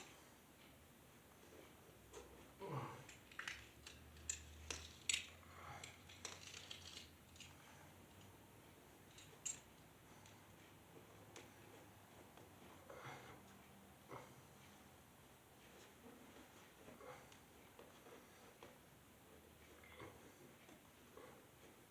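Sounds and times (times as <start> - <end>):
metal hardware and tools clinking: 6.1 - 7.6, 9.1 - 9.8.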